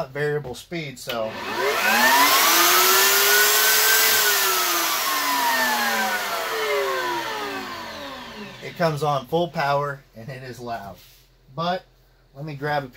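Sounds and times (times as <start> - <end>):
router motor whine: 1.3 - 9.2.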